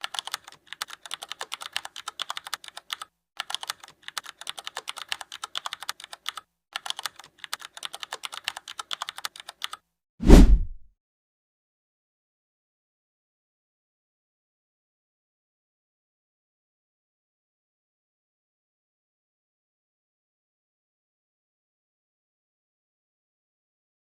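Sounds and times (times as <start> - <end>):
fast keyboard typing: 0.0 - 9.8.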